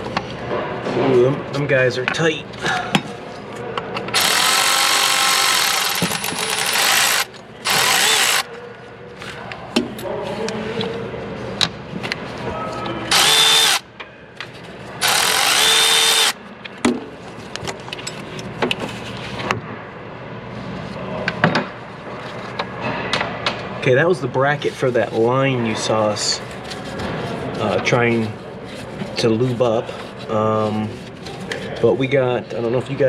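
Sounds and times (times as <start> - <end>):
cordless power tool whirring: 4.1 - 8.5, 13.1 - 13.8, 15.0 - 16.4.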